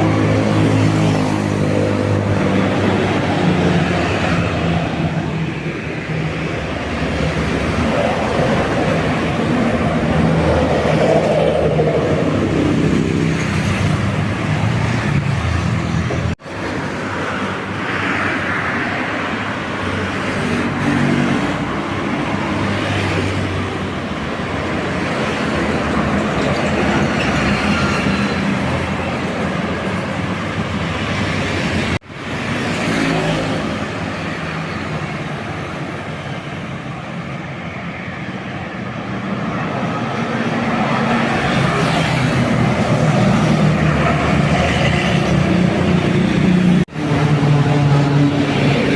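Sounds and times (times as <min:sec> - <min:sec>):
buses driving past: 0:00.0 - 0:48.9
tyre and traffic noise: 0:00.0 - 0:48.9
diesel engines running: 0:38.3 - 0:48.9.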